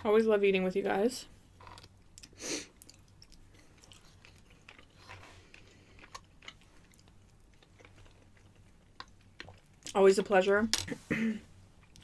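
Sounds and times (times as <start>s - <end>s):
chewing soft pasta: 1.8s - 10.0s, 11.7s - 12.0s.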